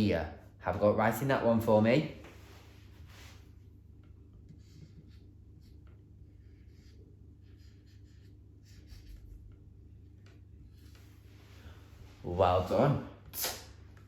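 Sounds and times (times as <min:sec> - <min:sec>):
low room hum: 0:00.0 - 0:14.0
pen scratching on paper: 0:04.5 - 0:09.3.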